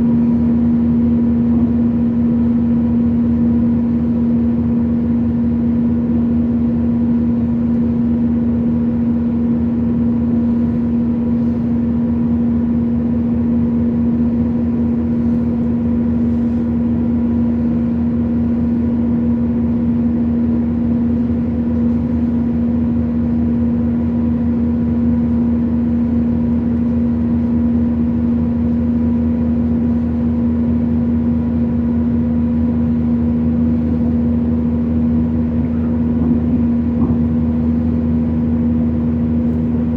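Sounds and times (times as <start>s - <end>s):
train running: 14.3s - 39.9s.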